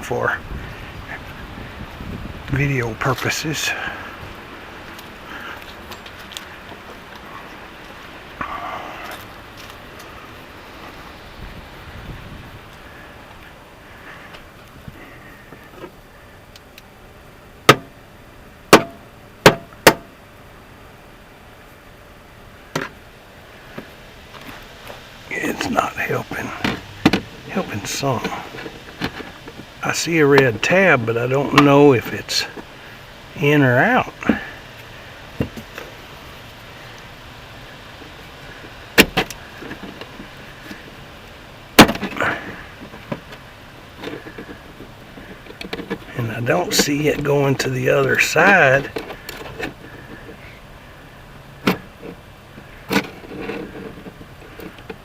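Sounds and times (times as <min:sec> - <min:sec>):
hard objects knocking with metallic ring: 0:18.8 - 0:20.1.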